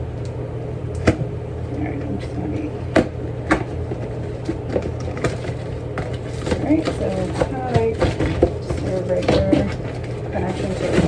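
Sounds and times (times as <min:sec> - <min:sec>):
packaging clicks and knocks: 0:03.0 - 0:11.0.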